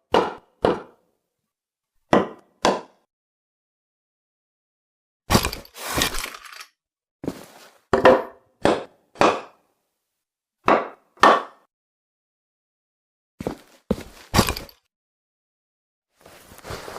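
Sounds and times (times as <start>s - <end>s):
hammer striking wooden boards: 0.1s - 1.0s, 2.1s - 3.0s, 8.0s - 9.6s, 10.6s - 11.7s
clattering rattle: 5.4s - 6.7s.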